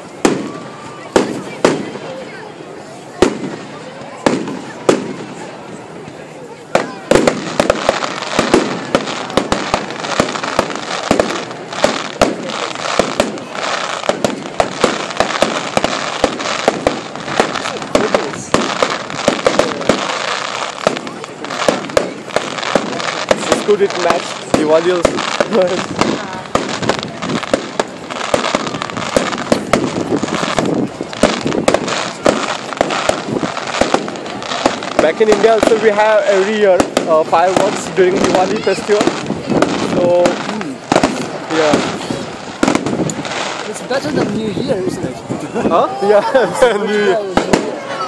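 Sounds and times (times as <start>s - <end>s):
fireworks bangs and crackles: 0.0s - 48.0s.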